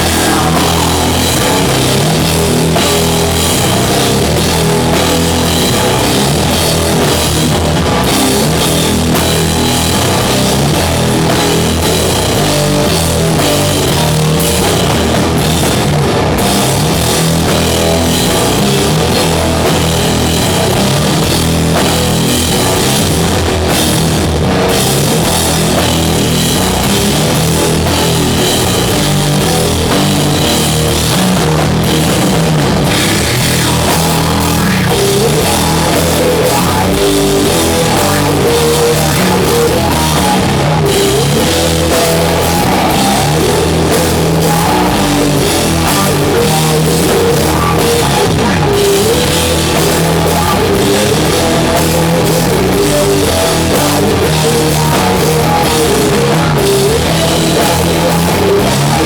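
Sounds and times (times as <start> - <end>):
drum kit: 0.0 - 59.0
heavy guitar riffs: 0.0 - 59.0.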